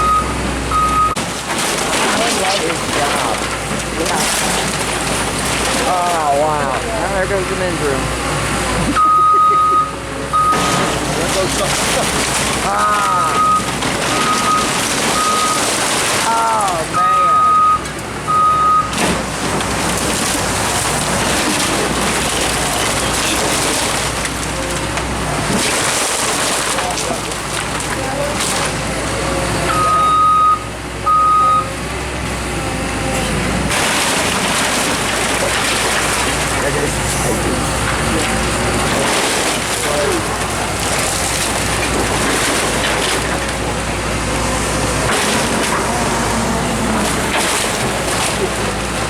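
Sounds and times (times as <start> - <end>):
heavy machine engine running: 0.0 - 49.0
rubble crunching and falling: 1.2 - 6.9, 10.5 - 17.9, 19.0 - 29.2, 33.6 - 49.0.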